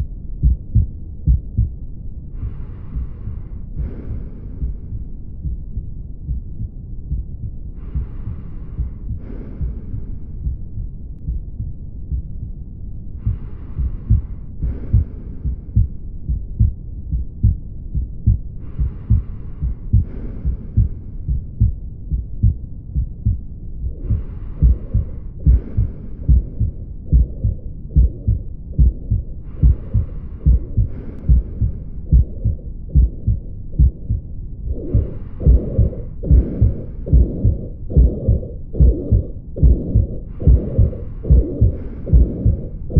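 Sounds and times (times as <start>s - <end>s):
heartbeat thuds: 0.0s - 12.6s, 13.2s - 42.9s
breathing hiss: 2.3s - 5.2s, 7.8s - 10.7s, 13.2s - 15.9s, 18.6s - 21.6s, 24.0s - 33.4s, 34.7s - 42.9s.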